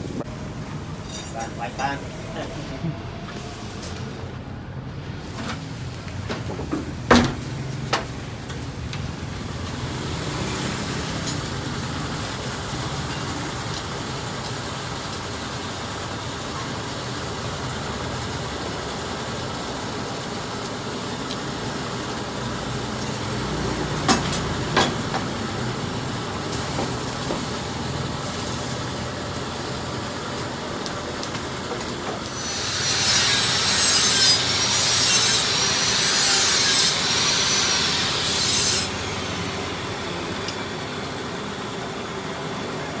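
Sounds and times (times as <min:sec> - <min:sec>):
tool rasping metal: 0:32.4 - 0:39.2.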